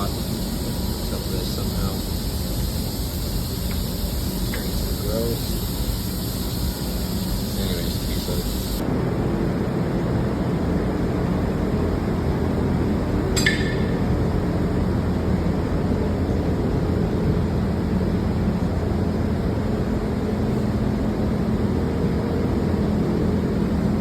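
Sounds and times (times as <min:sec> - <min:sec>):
machinery humming: 0:00.0 - 0:24.0
sharp metallic clink: 0:13.4 - 0:14.2.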